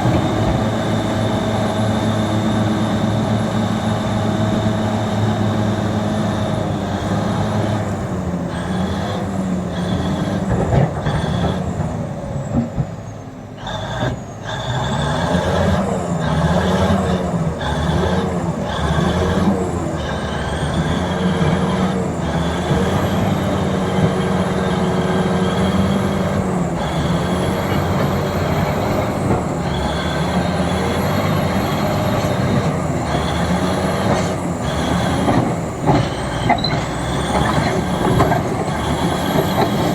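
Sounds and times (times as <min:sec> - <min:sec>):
bulldozer diesel engine: 0:00.0 - 0:39.9.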